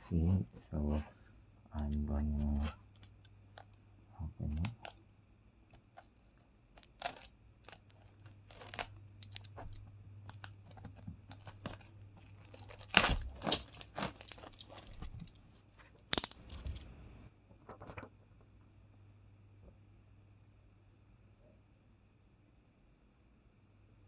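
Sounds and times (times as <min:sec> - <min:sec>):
packaging tearing and crinkling: 0:05.9 - 0:09.7, 0:10.3 - 0:15.0.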